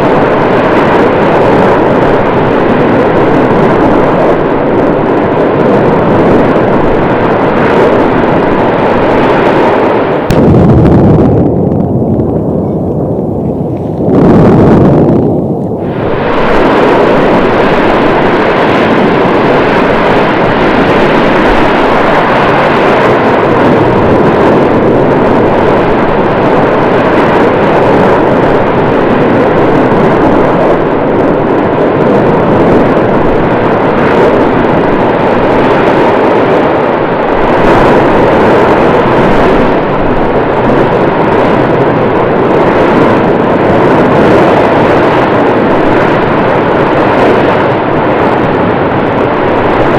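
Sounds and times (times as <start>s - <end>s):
volcanic eruption roar: 0.0s - 49.9s.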